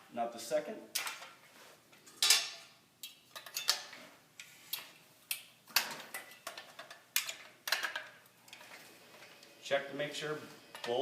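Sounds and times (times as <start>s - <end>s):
metal shelving rail clicking into posts: 0.9s - 1.4s, 2.0s - 8.8s.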